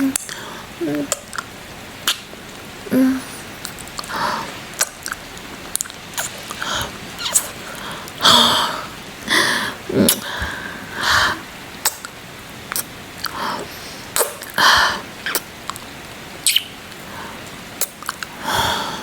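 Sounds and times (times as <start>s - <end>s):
rain hiss: 0.0s - 19.0s
wet lip smacks and kisses: 1.0s - 2.3s, 5.8s - 6.5s, 16.5s - 16.7s
breathy exhales: 18.3s - 19.0s.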